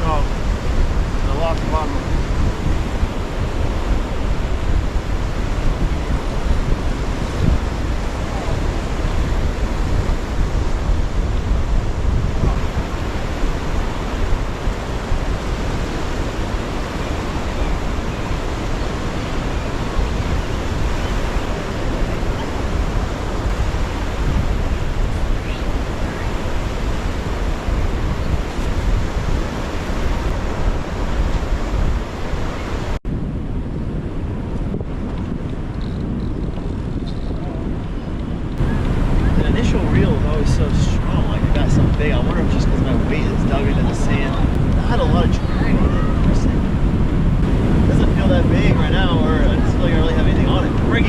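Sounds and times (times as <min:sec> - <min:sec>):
surf washing on beach: 0:00.0 - 0:51.0
wind buffeting microphone: 0:00.0 - 0:51.0.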